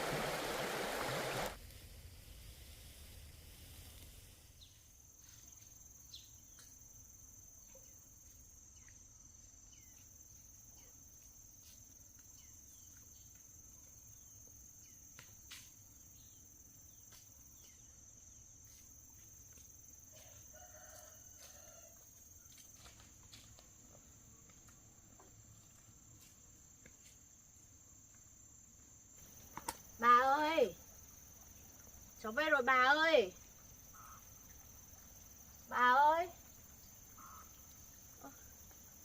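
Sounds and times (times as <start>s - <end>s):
distant rooster crowing: 20.1s - 22.2s
high-pitched insect drone: 29.2s - 39.0s.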